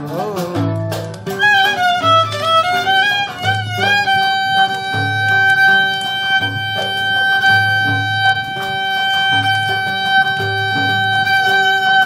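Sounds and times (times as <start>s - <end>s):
low plucked strings: 0.0s - 12.0s
violin melody: 0.0s - 12.0s.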